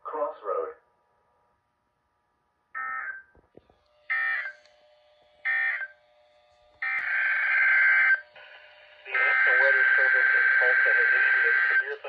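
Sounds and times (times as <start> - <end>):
buzzy digital data bursts: 6.8 - 11.9.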